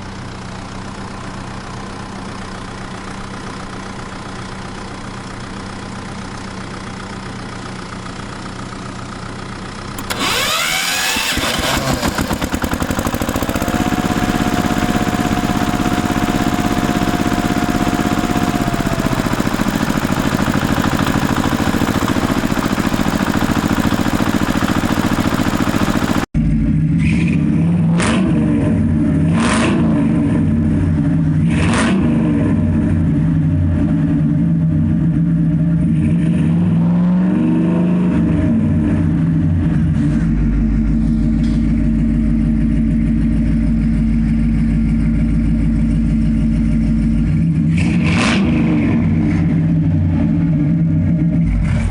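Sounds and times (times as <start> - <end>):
engine running: 0.0 - 51.9
steady high whine: 10.0 - 26.3
heavy vehicle engine revving: 10.0 - 41.6, 46.9 - 51.9.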